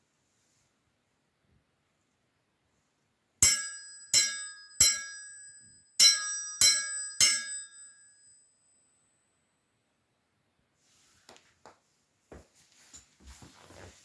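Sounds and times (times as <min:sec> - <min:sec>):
metal sai strikes ringing: 0:03.4 - 0:08.7.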